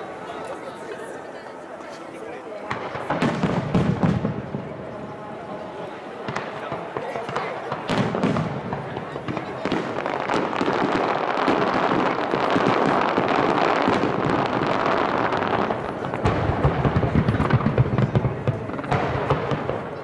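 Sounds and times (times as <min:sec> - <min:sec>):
fireworks crackling and popping: 0:02.7 - 0:20.0
low booms of bursting shells: 0:06.2 - 0:20.0.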